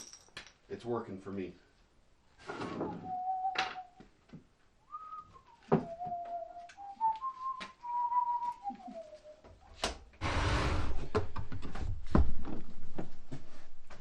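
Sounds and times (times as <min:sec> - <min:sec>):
man whistling a tune: 0:02.8 - 0:04.0, 0:04.9 - 0:09.5.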